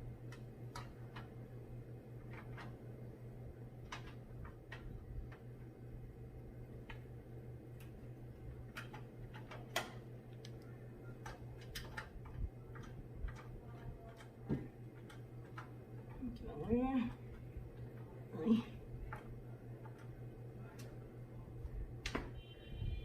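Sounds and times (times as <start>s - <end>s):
steady low hum: 0.0s - 23.0s
hands clicking computer case parts: 0.2s - 1.4s, 2.2s - 2.8s, 3.8s - 5.5s, 7.7s - 18.1s, 19.1s - 21.0s.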